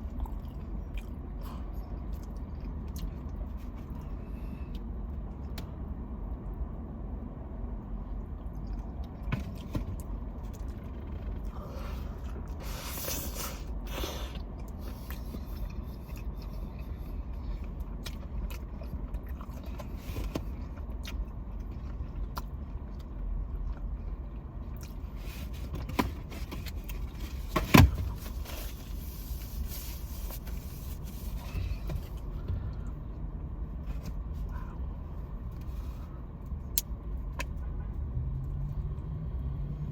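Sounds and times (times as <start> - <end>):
chewing and mouth clicks: 0.0 - 4.1, 14.3 - 25.0
steady low rumble: 0.0 - 39.9.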